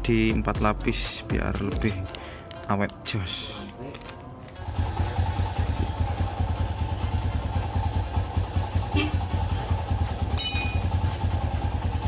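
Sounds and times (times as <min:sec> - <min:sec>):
motorcycle engine idling: 0:04.6 - 0:12.0
brief high ringing: 0:10.4 - 0:10.9.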